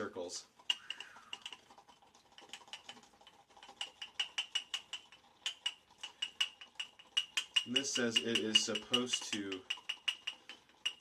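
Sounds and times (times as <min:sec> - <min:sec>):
person speaking: 0:00.0 - 0:01.3, 0:07.4 - 0:09.9.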